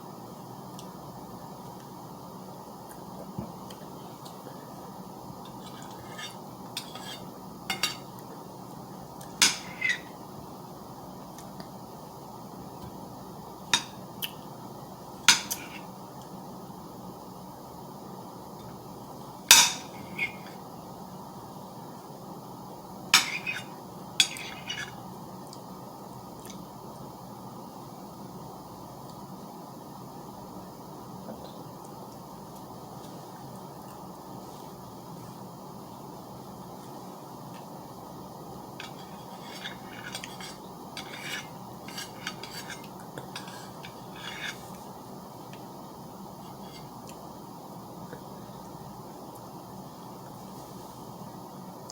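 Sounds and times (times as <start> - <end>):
steady background hum: 0.0 - 51.9
steady low hiss: 0.0 - 51.9
cutlery clinking on a plate: 5.5 - 8.1, 9.4 - 10.1, 23.2 - 25.0, 38.8 - 44.6.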